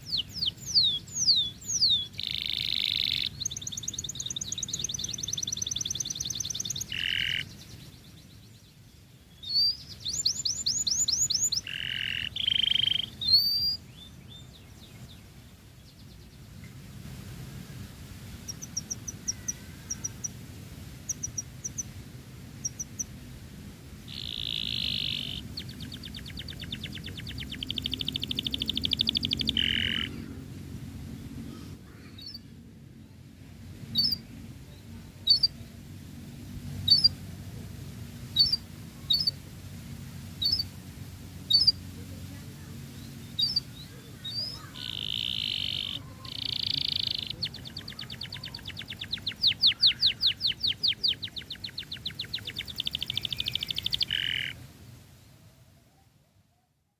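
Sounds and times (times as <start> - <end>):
canary singing: 0.0 - 8.5, 9.4 - 15.2, 18.4 - 20.4, 21.0 - 22.0, 22.6 - 23.1, 24.0 - 30.5, 33.9 - 34.3, 35.2 - 35.6, 36.8 - 37.2, 38.4 - 39.4, 40.4 - 40.7, 41.4 - 41.9, 43.0 - 54.6.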